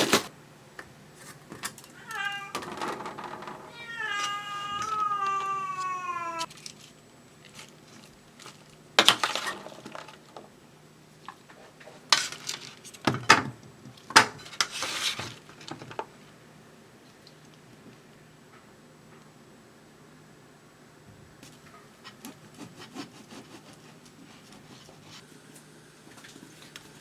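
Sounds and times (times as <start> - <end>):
cat meowing: 1.9 - 2.8, 3.6 - 6.5.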